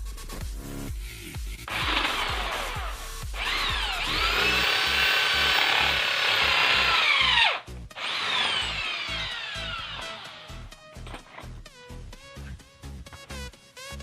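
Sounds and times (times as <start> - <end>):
background music with steady beat: 0.0 - 14.0
electric drill whining: 1.7 - 11.5.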